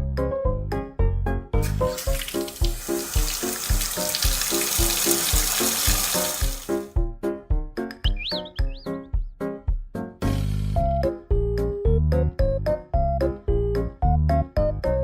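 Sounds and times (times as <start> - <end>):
music with steady beat: 6.5 - 10.0.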